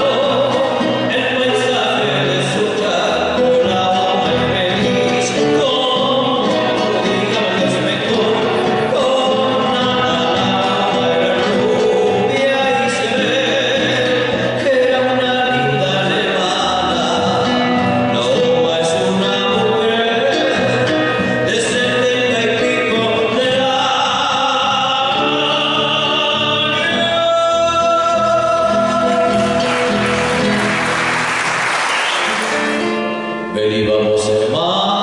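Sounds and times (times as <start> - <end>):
folk singing with instruments: 0.0 - 30.8
applause: 29.2 - 33.2.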